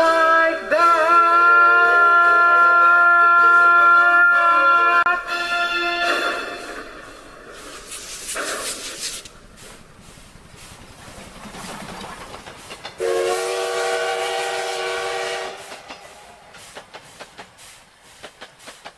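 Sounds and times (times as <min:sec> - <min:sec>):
steam train whistle: 0:00.0 - 0:07.4, 0:13.0 - 0:16.9
steady rushing noise: 0:06.1 - 0:13.0.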